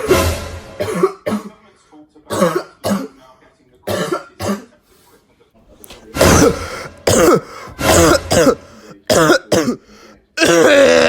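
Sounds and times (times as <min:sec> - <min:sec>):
person coughing hard: 0:00.8 - 0:01.6, 0:02.3 - 0:03.2, 0:03.9 - 0:04.7, 0:06.1 - 0:11.0.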